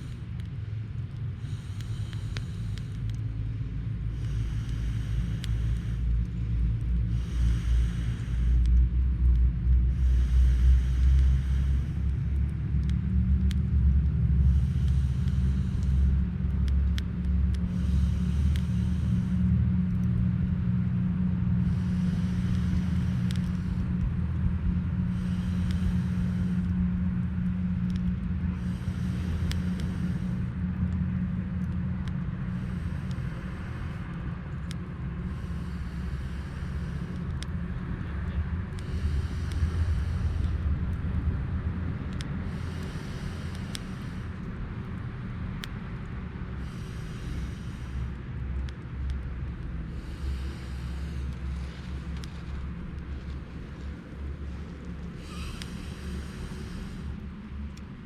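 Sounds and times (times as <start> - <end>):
campfire burning: 0.0 - 58.0
fire popping: 0.0 - 58.0
hiss: 1.4 - 3.0, 4.1 - 8.7, 9.9 - 12.1, 14.4 - 16.2, 17.6 - 19.6, 21.6 - 24.0, 25.0 - 26.8, 28.5 - 30.6, 32.5 - 34.1, 35.2 - 37.3, 38.8 - 40.7, 42.4 - 44.4, 46.6 - 48.3, 49.8 - 57.6.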